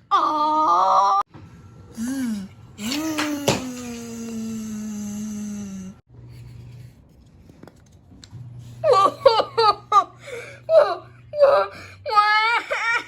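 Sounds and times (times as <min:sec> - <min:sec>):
low moaning voice: 0:01.9 - 0:06.0.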